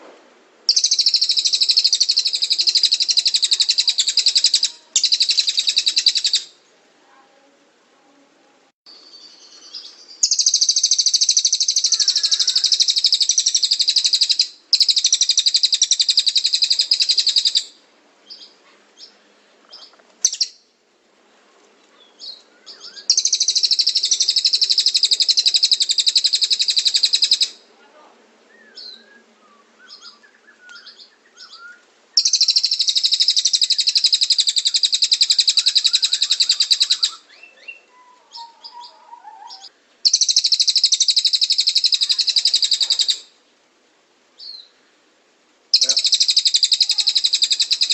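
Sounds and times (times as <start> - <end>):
bird rapid high trilling: 0.7 - 6.5, 10.2 - 17.7, 22.8 - 27.6, 32.2 - 43.3, 45.7 - 47.9
bird short chirps: 45.8 - 47.9.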